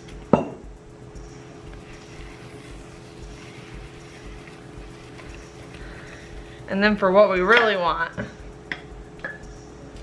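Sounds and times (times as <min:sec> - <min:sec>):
low hum: 0:01.4 - 0:07.4.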